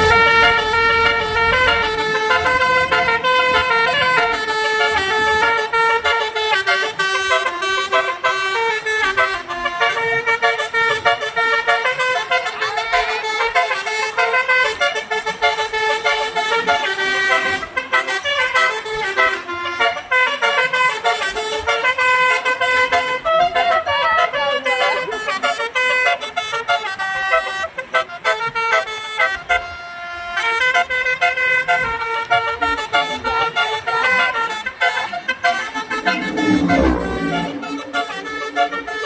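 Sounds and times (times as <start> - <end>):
multi-tone bus horn melody: 0.0 - 39.0.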